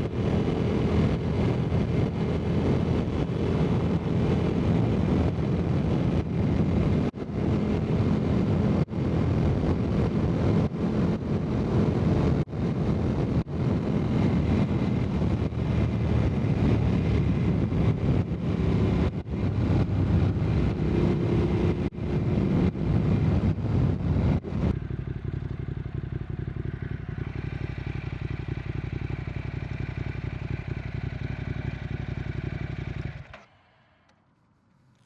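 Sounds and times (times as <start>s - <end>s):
wind buffeting microphone: 0.0s - 25.6s
motorcycle engine running: 0.0s - 34.3s.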